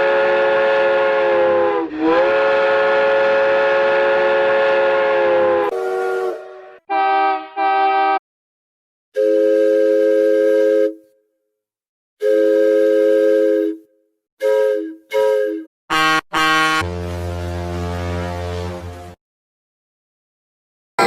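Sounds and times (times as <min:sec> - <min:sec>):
train whistle blasts: 0:00.0 - 0:08.2, 0:09.2 - 0:11.1, 0:12.2 - 0:18.9.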